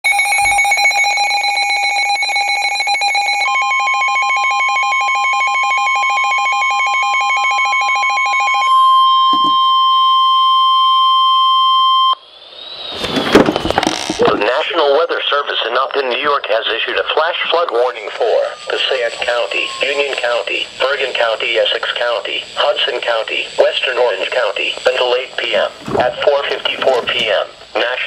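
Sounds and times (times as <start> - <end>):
steady alarm tone: 0.0 - 15.2, 17.2 - 27.8
rapidly pulsing alarm beep: 0.0 - 15.3, 16.2 - 27.6
broadcast voice: 14.2 - 28.0.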